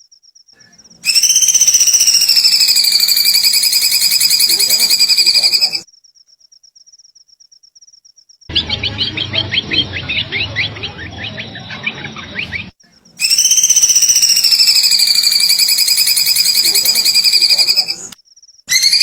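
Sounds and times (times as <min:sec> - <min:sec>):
downward-sweeping bird chirps: 0:00.6 - 0:05.8, 0:08.5 - 0:18.1
faint pulsing bird whistle: 0:00.6 - 0:05.8, 0:08.5 - 0:18.1
loud pulsing bird trill: 0:00.6 - 0:05.8, 0:08.5 - 0:18.1, 0:18.7 - 0:19.0.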